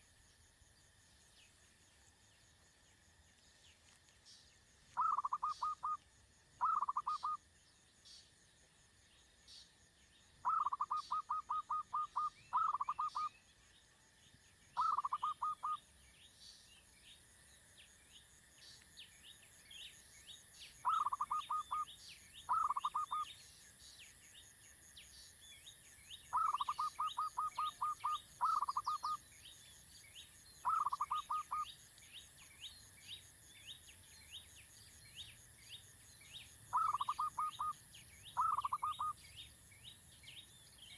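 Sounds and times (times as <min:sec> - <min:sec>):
faint high chirping: 0:00.0 - 0:08.4, 0:09.0 - 0:40.9.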